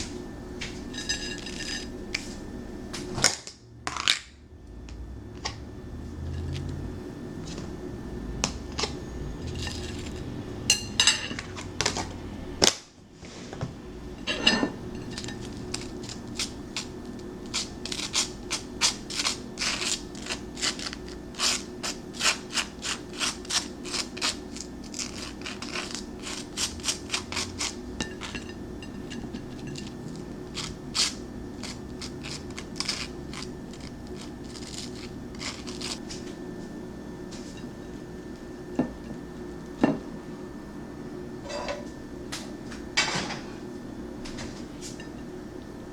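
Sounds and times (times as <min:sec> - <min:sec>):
steady low hum: 0:00.0 - 0:45.9
kitchen utensils clicking and scraping: 0:00.6 - 0:01.9, 0:08.4 - 0:12.2, 0:14.2 - 0:36.0, 0:41.4 - 0:41.9.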